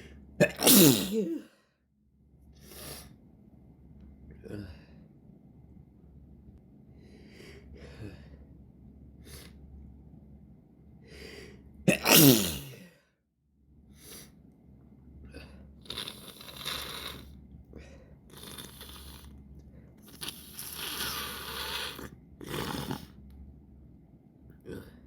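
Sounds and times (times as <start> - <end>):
person sneezing: 0.4 - 1.6, 11.9 - 12.8
noisy breathing: 2.6 - 3.2, 6.9 - 8.6, 11.0 - 11.8, 15.2 - 23.2.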